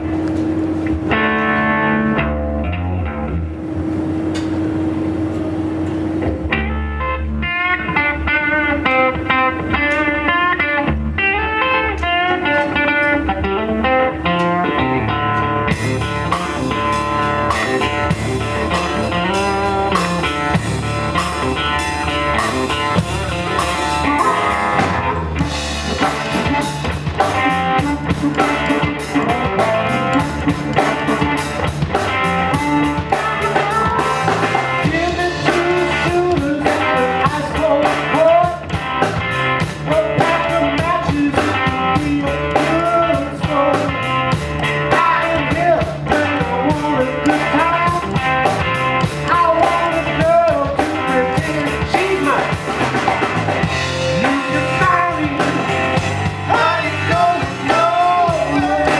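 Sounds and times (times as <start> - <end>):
drum kit: 0.0 - 1.8, 14.1 - 58.9
bass: 0.0 - 58.9
electric guitar: 0.0 - 58.9.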